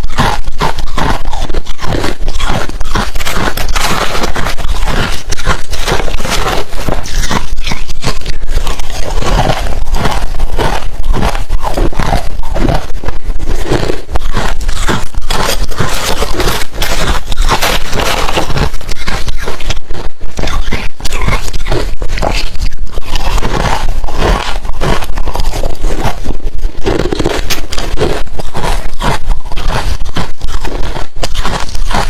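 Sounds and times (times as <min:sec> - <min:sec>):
crunching ice being chewed: 0:00.0 - 0:32.0.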